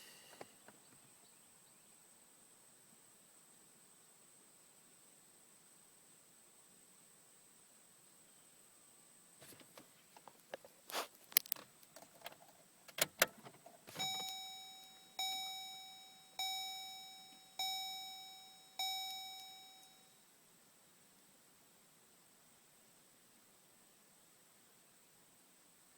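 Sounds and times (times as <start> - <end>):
car warning chime dings: 13.9 - 20.1.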